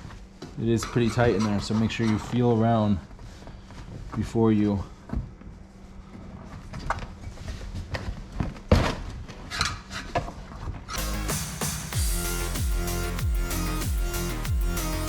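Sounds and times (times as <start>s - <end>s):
electronic background music: 11.0s - 15.0s.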